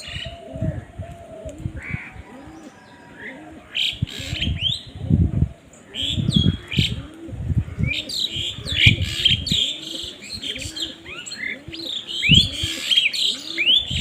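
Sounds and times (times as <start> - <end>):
doves cooing: 0.0 - 14.0
small birds chirping: 5.6 - 14.0.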